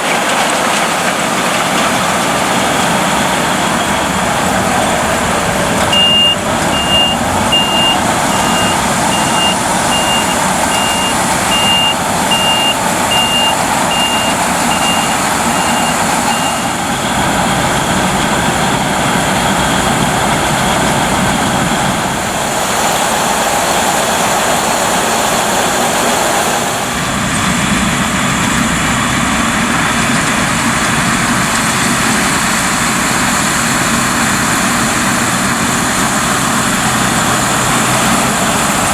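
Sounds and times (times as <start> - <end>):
combine harvester engine running: 0.0 - 38.9
electronic warning beeper: 5.9 - 16.8.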